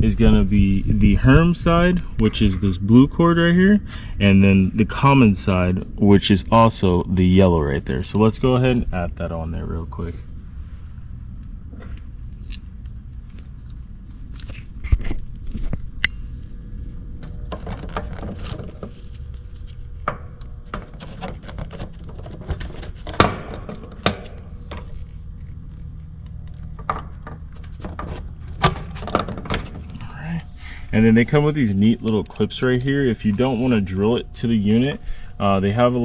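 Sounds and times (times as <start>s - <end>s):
steady low rumble: 0.0s - 36.0s
wire connectors clicking and rattling: 17.2s - 30.1s.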